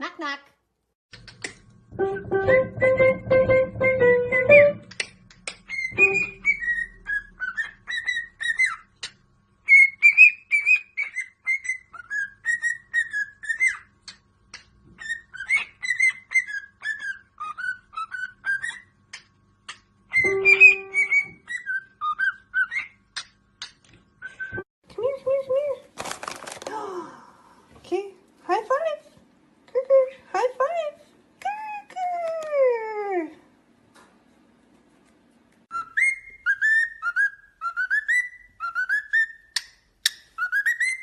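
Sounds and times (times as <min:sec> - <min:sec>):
parrot whistling a tune: 0:05.7 - 0:08.9, 0:09.6 - 0:13.9, 0:15.0 - 0:18.9, 0:20.1 - 0:23.0, 0:35.7 - 0:39.6, 0:40.4 - 0:41.0.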